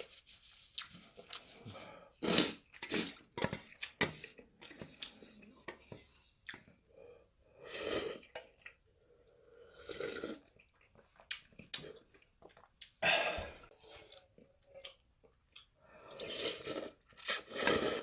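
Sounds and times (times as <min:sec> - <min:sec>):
wet slurping of noodles: 0:09.6 - 0:10.5, 0:16.2 - 0:18.0.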